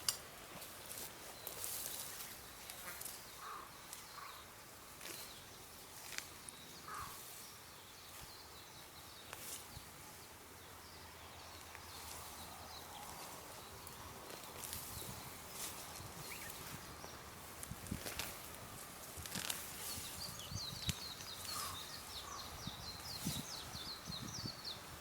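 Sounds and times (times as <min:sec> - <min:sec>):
distant bird chirps: 0:01.4 - 0:17.3, 0:19.8 - 0:24.9
light rustles and clicks: 0:17.6 - 0:20.1.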